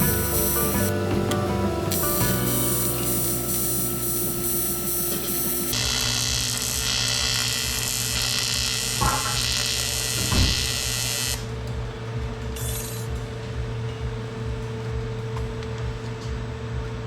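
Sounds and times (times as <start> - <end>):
welding arc buzzing: 0.0 - 11.7.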